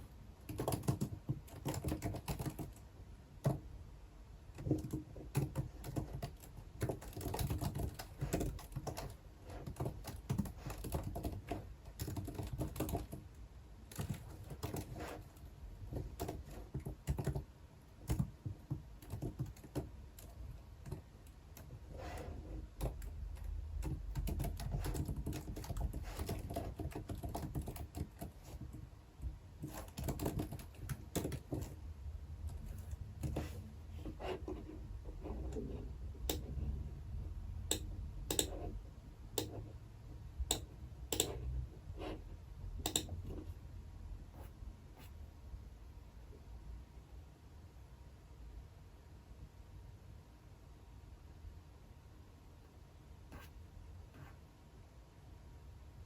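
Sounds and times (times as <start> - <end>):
faint low hum: 0.0 - 56.0
typing on computer keyboard: 0.4 - 3.6, 4.5 - 21.8, 22.8 - 28.8, 29.6 - 31.8, 37.7 - 38.7, 39.4 - 39.6, 40.5 - 41.4, 42.8 - 43.5.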